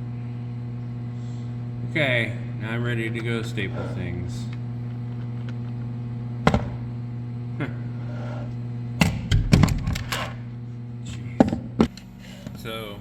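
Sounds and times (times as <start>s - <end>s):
low electrical hum: 0.0s - 13.0s
stapler firing staples: 9.0s - 10.4s.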